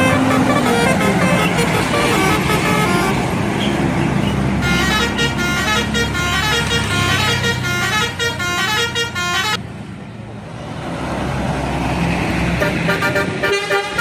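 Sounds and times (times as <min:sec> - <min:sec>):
bus horn playing melody: 0:00.0 - 0:09.6, 0:12.6 - 0:14.0
bus engine: 0:00.0 - 0:14.0.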